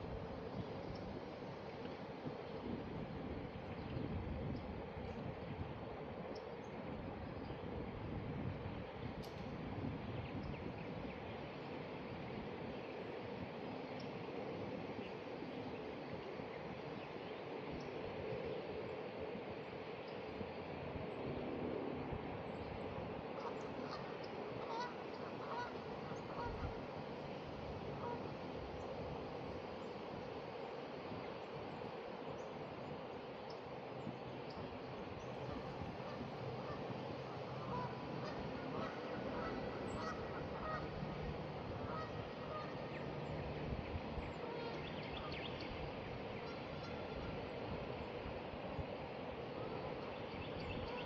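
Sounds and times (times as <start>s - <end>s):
wind buffeting microphone: 0.0s - 13.6s, 33.9s - 51.0s
geese honking: 23.4s - 26.8s, 35.5s - 43.1s, 44.4s - 44.8s
faint bird calls: 23.4s - 27.0s, 34.4s - 48.2s, 48.8s - 51.0s.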